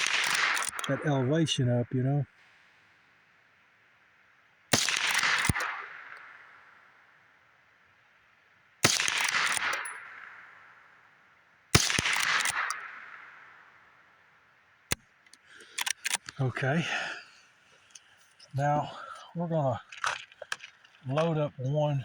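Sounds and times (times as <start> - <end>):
rifle action click: 0.0 - 0.9, 4.8 - 6.3, 8.9 - 9.9, 11.8 - 12.8, 14.9 - 16.4
rifle shots with echo: 0.0 - 1.2, 4.7 - 7.2, 8.8 - 14.4.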